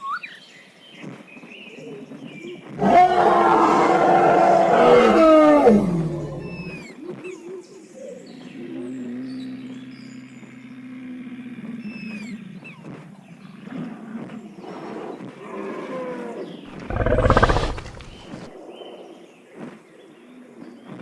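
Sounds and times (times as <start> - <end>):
dinosaur roar: 2.8 - 6.8, 16.7 - 18.5.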